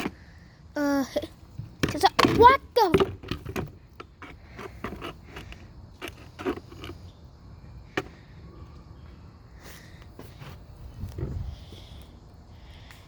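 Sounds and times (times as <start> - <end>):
small clicks knocks and scrapes: 2.9 - 7.1.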